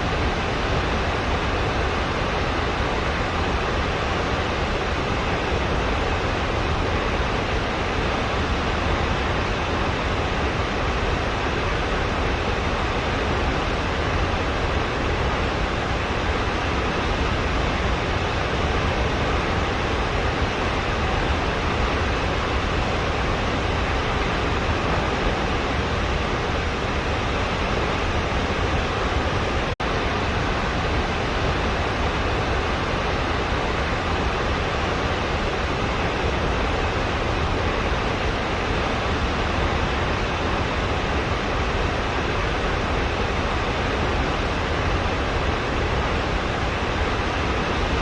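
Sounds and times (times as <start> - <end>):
rushing water: 0.0 - 48.0.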